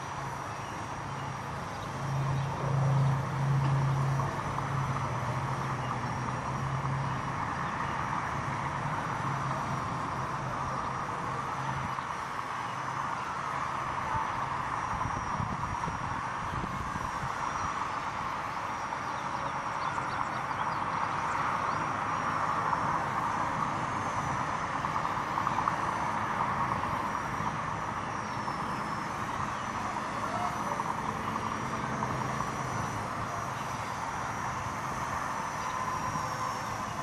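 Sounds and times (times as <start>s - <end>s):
rc helicopter buzzing: 0.0s - 37.0s
wind rumbling on microphone: 13.8s - 18.6s.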